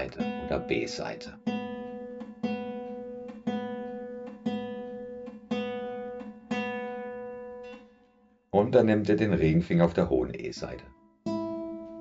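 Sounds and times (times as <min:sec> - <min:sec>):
guitar string plucked: 0:00.0 - 0:07.9.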